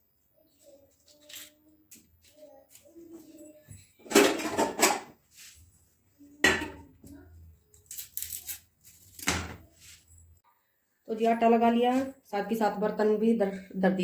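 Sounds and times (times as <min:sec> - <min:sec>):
dishes and utensils clattering: 0:03.1 - 0:05.6, 0:06.3 - 0:07.2.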